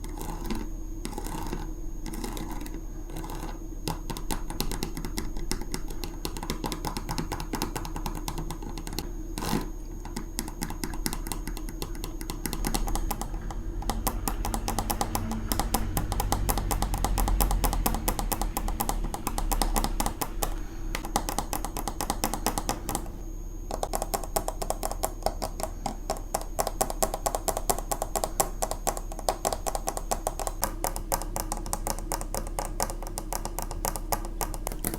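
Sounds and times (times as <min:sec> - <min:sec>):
magnets tapping and scratching: 0:11.8 - 0:23.1.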